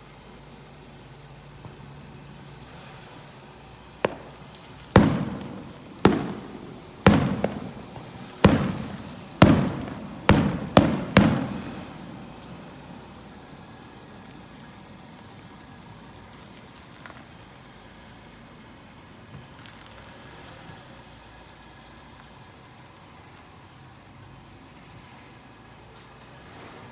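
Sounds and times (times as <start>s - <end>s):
steady background noise: 0.0s - 26.9s
fireworks booming: 3.8s - 15.4s.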